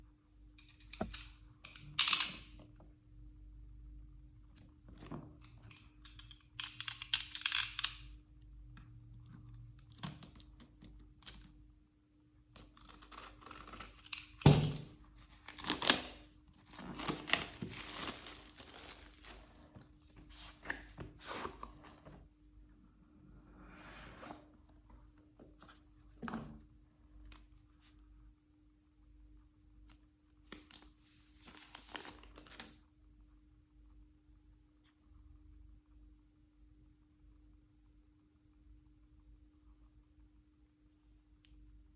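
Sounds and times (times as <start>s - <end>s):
plastic film tearing and crinkling: 15.4s - 19.6s
cardboard rustling: 16.6s - 22.2s.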